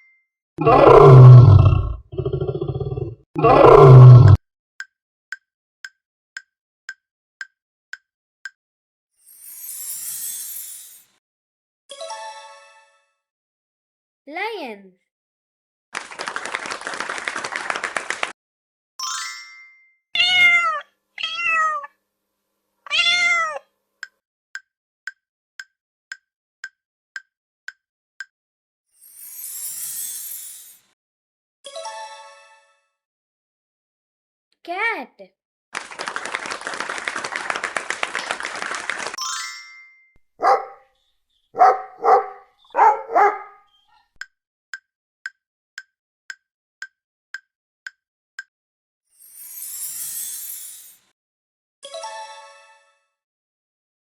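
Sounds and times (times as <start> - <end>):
rapid rattling sound effect: 16.0 - 18.3, 35.8 - 39.2
cat meowing: 20.2 - 21.9, 22.9 - 23.6
dog barking: 40.4 - 40.9, 41.6 - 44.1.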